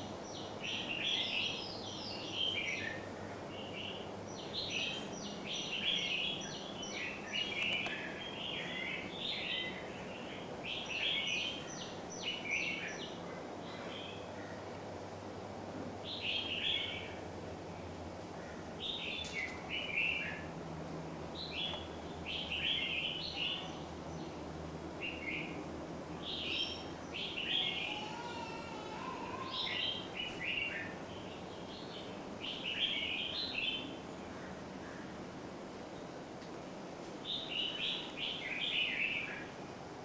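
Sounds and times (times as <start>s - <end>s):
low background hum: 0.0s - 40.0s
bird singing chirpy phrases: 0.2s - 14.2s, 26.2s - 34.0s.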